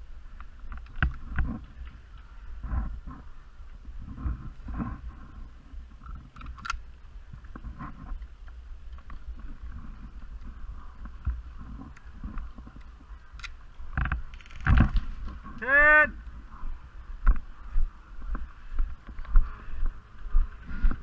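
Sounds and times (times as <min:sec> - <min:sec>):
low rumbling movement: 0:00.0 - 0:21.0
wind noise on microphone: 0:00.0 - 0:21.0
sharp cracks: 0:13.3 - 0:15.6.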